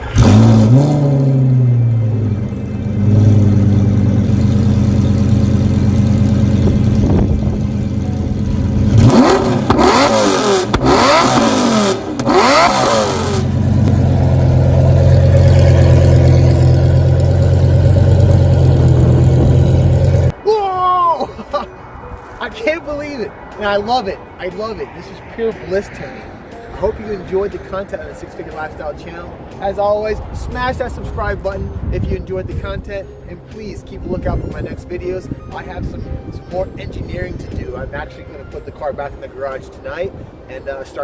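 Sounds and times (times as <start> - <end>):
engine throttle revs: 0.0 - 20.3
car engine starting and idling: 0.0 - 20.4.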